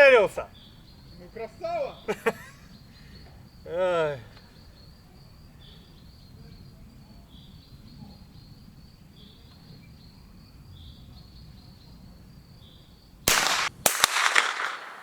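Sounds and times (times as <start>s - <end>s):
insects chirping: 0.0s - 15.0s
rifle shot: 13.3s - 15.0s.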